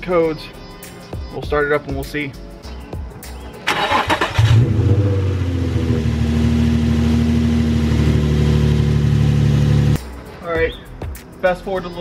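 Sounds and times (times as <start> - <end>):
car engine starter cranking: 3.7 - 5.2
car engine idling: 3.7 - 10.0.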